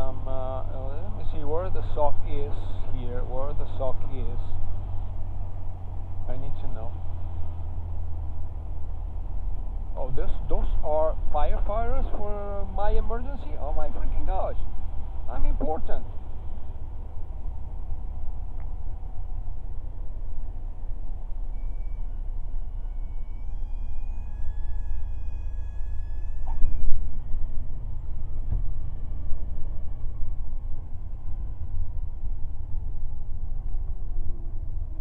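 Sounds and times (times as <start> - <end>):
light aircraft engine droning: 0.0 - 35.0
high warning tone: 20.4 - 33.3
thump: 28.4 - 28.7.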